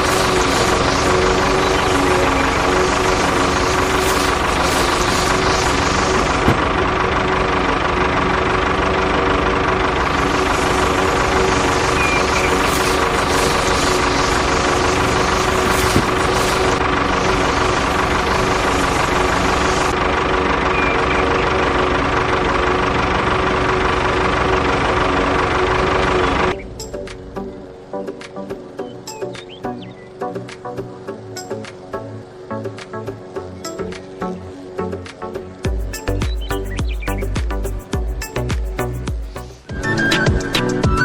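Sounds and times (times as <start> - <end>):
motor whining and rattling: 0.0 - 41.0.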